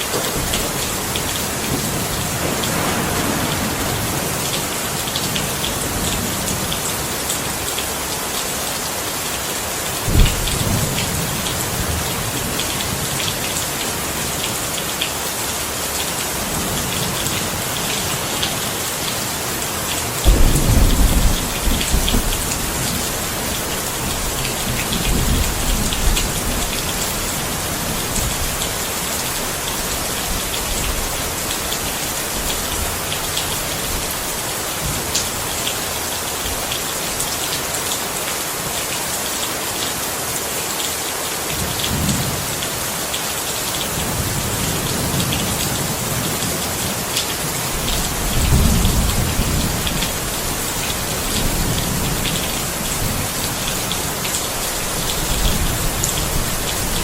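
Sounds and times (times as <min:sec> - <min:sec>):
heavy rain pattering: 0:00.0 - 0:57.0
thunder rumbling: 0:00.1 - 0:07.5, 0:10.0 - 0:13.2, 0:20.2 - 0:35.5, 0:47.7 - 0:57.0.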